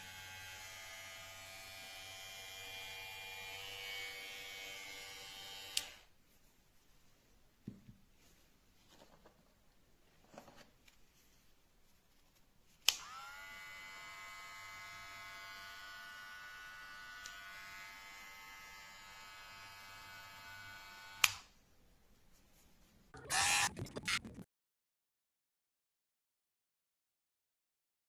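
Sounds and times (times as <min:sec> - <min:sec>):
hair clipper motor humming: 0:13.0 - 0:21.1.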